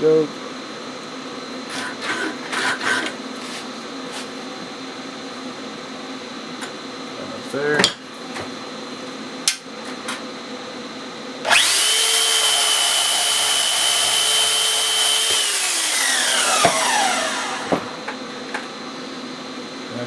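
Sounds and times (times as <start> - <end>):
electric power tool whining: 11.4 - 18.6.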